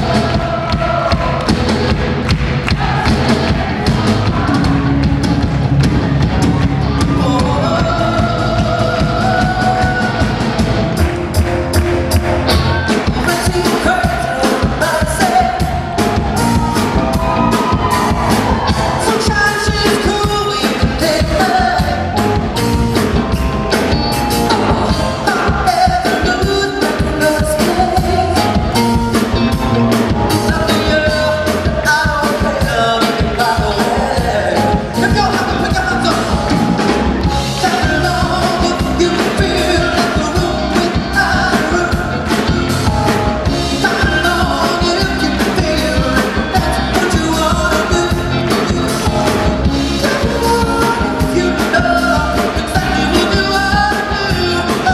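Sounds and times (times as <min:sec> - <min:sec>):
band with drum beat: 0:00.0 - 0:54.9
man singing pop: 0:07.0 - 0:10.5, 0:13.0 - 0:16.0, 0:18.9 - 0:22.4, 0:24.5 - 0:28.9, 0:30.4 - 0:54.9.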